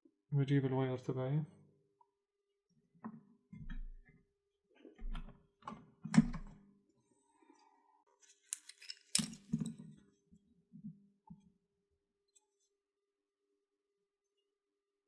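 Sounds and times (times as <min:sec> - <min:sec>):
small tools clicking and rattling: 0:08.3 - 0:09.8.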